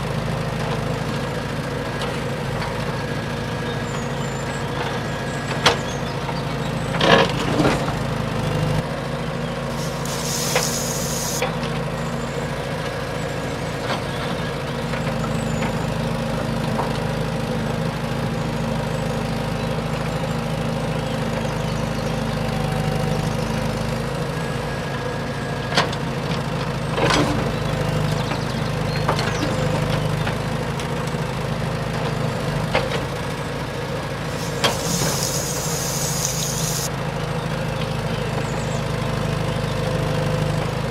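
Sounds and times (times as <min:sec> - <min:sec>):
engine-like hum: 0:00.0 - 0:40.9
short bursts of hiss: 0:09.8 - 0:11.4, 0:34.3 - 0:36.9.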